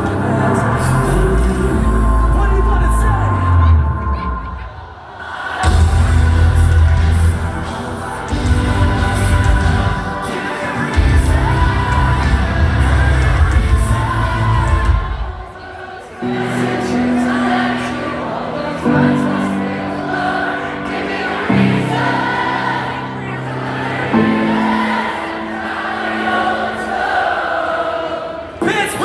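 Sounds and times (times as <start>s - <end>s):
many voices singing: 0.0s - 29.0s
band playing live: 5.6s - 15.6s.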